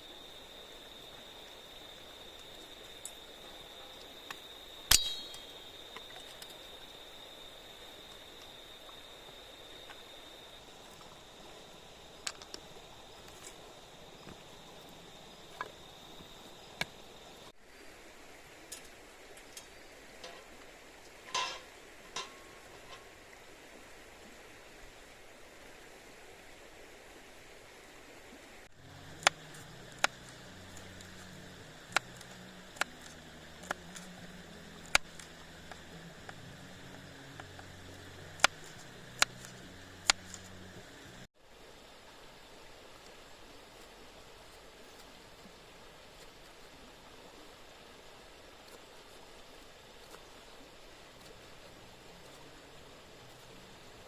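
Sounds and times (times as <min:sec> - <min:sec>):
insects droning: 0:00.0 - 0:54.0
steady hiss: 0:00.0 - 0:54.0
faint clicks: 0:02.4 - 0:03.2
utensil clinking against pan: 0:21.2 - 0:23.1.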